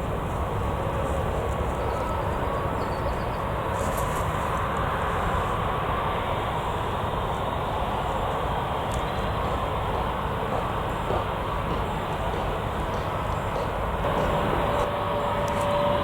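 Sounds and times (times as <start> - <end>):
jet engines running: 0.0 - 16.0.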